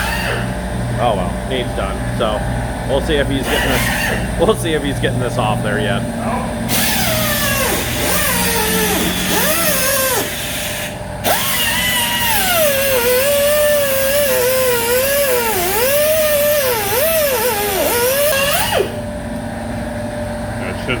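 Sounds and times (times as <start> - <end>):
power cutoff tool cutting metal: 0.0 - 0.5, 3.3 - 4.8, 6.7 - 19.0.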